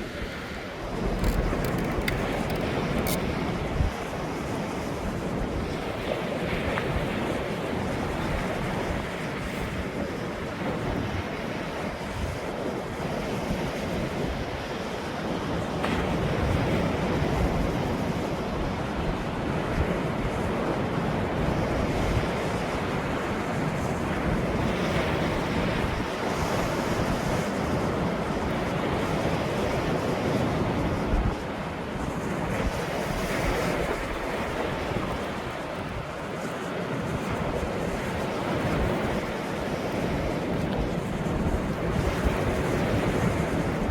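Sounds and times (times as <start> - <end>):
wind buffeting microphone: 32.4 - 43.9.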